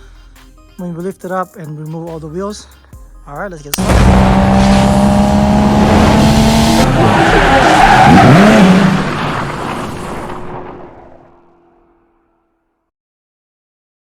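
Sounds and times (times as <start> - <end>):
car engine: 3.7 - 12.5
tyres skidding: 3.8 - 12.1.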